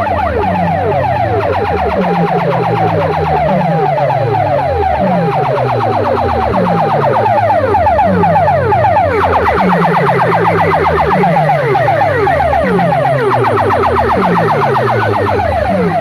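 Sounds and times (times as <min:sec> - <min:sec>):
siren-style electronic effect: 0:00.0 - 0:16.0.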